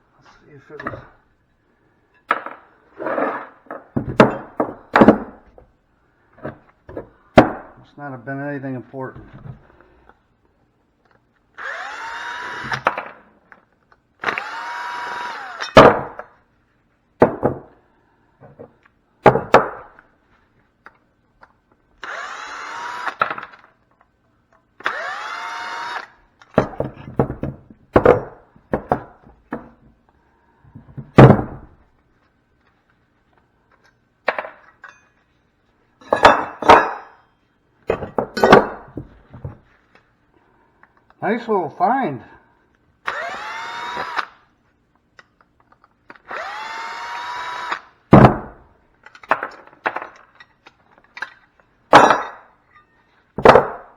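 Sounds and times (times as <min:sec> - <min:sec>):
power drill whining: 0:11.6 - 0:12.9, 0:14.2 - 0:15.8, 0:22.0 - 0:23.6, 0:24.8 - 0:26.3, 0:43.0 - 0:44.5, 0:46.1 - 0:48.0.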